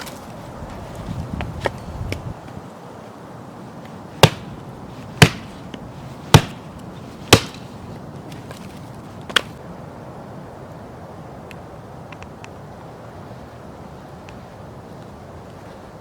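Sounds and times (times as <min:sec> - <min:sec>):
wood being chopped: 0:04.2 - 0:05.6, 0:06.3 - 0:06.6, 0:07.3 - 0:07.7, 0:09.3 - 0:09.6.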